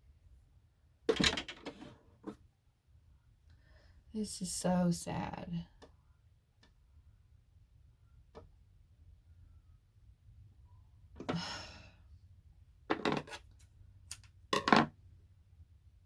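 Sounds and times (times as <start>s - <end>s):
woman sighing: 11.2s - 12.0s
breathy huffs: 11.3s - 12.0s.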